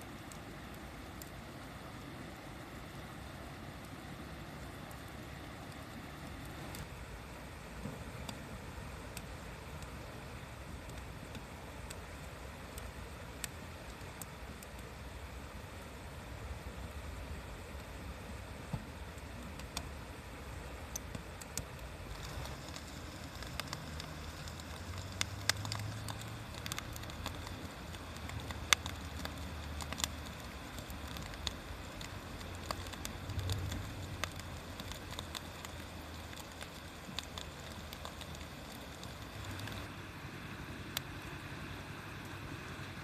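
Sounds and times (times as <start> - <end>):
bonfire crackling and popping: 0.0 - 43.0
steady low rumble: 14.8 - 43.0.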